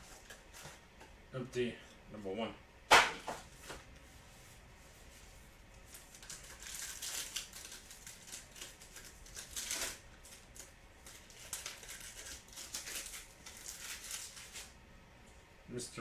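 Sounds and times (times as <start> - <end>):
card pack wrappers crinkling: 5.8 - 14.8.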